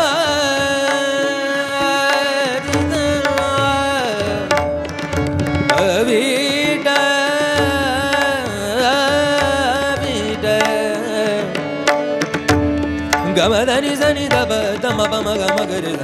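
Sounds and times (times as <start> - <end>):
man singing devotional song: 0.0 - 16.0
drum and instrumental accompaniment: 2.7 - 8.3, 11.6 - 15.6.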